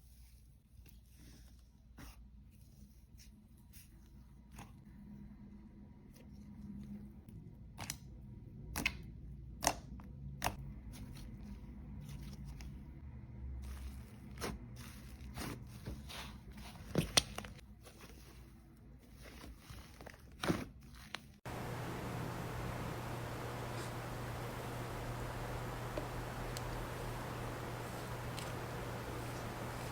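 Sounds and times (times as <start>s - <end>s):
soft handling rumble: 21.5s - 29.9s
steady hiss: 21.5s - 29.9s.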